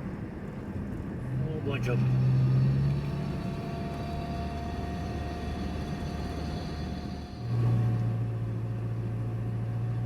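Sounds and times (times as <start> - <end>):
car cabin road and engine noise: 0.0 - 10.0.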